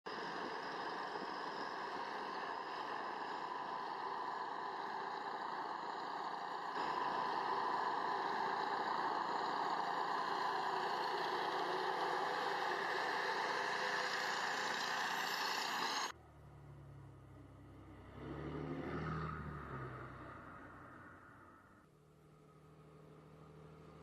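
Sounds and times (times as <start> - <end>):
heavy vehicle engine running: 0.0 - 17.8.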